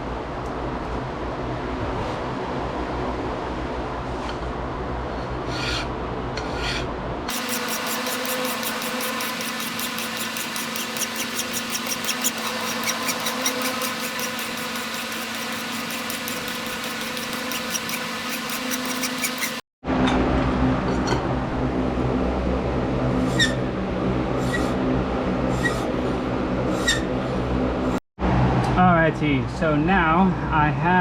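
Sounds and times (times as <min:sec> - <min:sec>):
file scraping steel blade: 0:05.4 - 0:19.6, 0:23.2 - 0:23.6, 0:25.5 - 0:25.9, 0:26.7 - 0:27.1
steady machine hum: 0:07.0 - 0:28.6.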